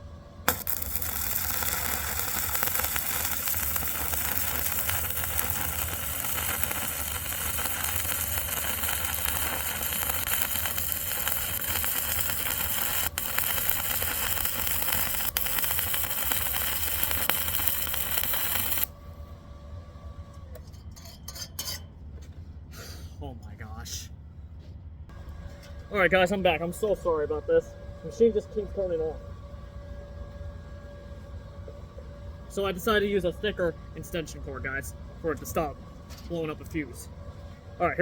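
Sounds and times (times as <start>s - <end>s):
welding arc burning: 0.5s - 18.9s.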